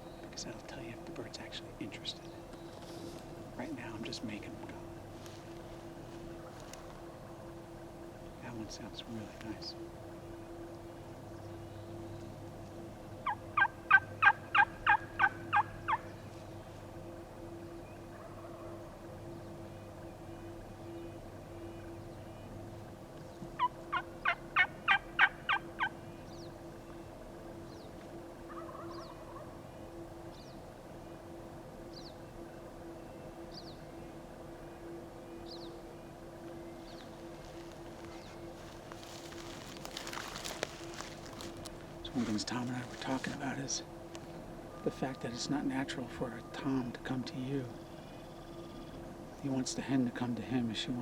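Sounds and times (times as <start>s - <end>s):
turkey hen yelps: 13.2s - 16.1s, 23.6s - 25.9s, 28.5s - 29.5s.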